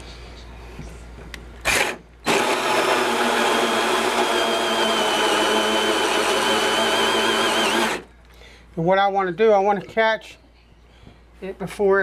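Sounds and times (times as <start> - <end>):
electric drill with hole saw boring: 1.7 - 8.1.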